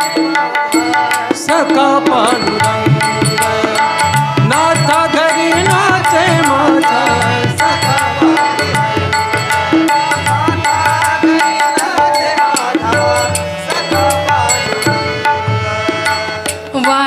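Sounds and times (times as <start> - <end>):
harmonium melody: 0.0 - 17.0
tabla rhythm: 0.0 - 17.0.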